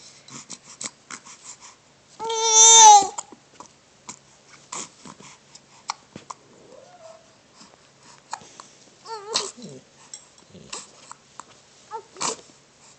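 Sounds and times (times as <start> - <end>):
baby squealing: 2.3 - 3.2.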